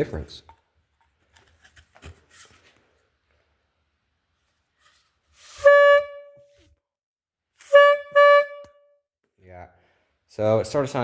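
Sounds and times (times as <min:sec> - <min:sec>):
air horn honk: 0:05.5 - 0:06.6, 0:07.6 - 0:09.0.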